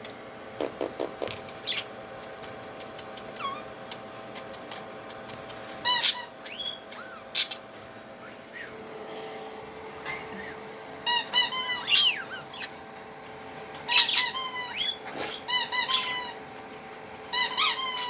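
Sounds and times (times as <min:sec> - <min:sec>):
budgerigars chirping: 0:05.9 - 0:07.6, 0:11.1 - 0:12.8, 0:13.9 - 0:16.4.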